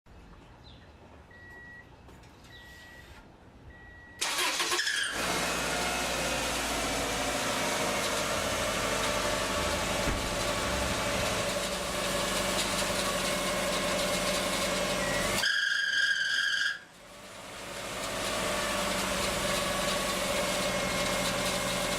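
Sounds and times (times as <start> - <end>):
car engine cranking and starting: 3.8 - 15.4, 17.1 - 21.9
whining tone: 4.2 - 16.8.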